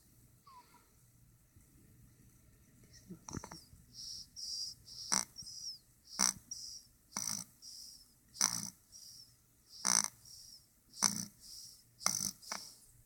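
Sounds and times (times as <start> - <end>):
faint high hiss: 0.0 - 13.0
person snoring: 7.2 - 7.5, 8.4 - 8.8, 11.0 - 12.8.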